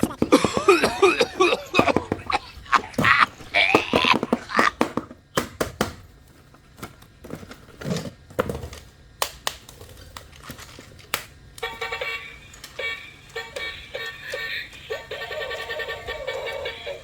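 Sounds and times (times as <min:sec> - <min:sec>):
plastic toys clicking and knocking: 0:00.0 - 0:06.0.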